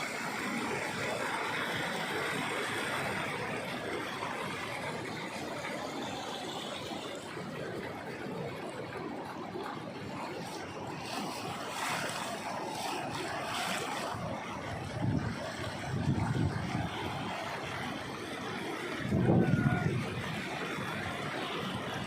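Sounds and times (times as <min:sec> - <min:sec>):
floodwater rushing: 0:00.0 - 0:22.0
wind buffeting microphone: 0:10.2 - 0:22.0.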